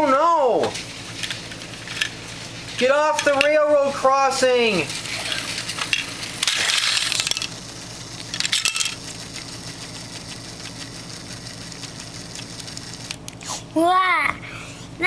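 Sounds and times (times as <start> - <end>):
plastic bricks clattering: 4.9 - 7.6, 8.2 - 9.5.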